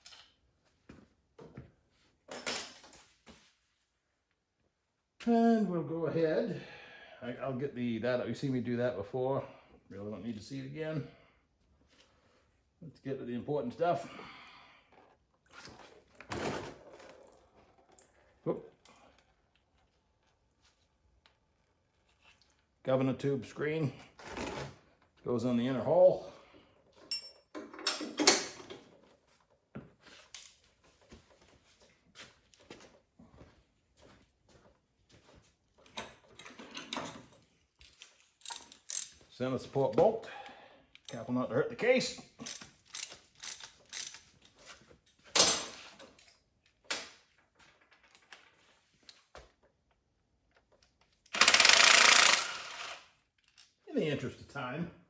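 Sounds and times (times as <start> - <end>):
metal parts clattering and scraping: 36.0 - 39.3, 42.4 - 46.4
metal tool clicks and clanks: 38.0 - 39.2, 42.4 - 44.3, 51.3 - 53.7
power wrench buzzing: 51.3 - 53.1.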